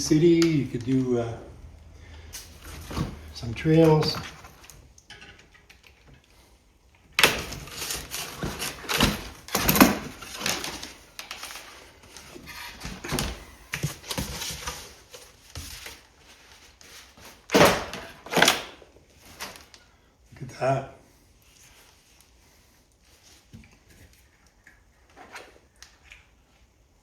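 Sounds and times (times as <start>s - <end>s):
packaging rustling: 7.2s - 19.8s.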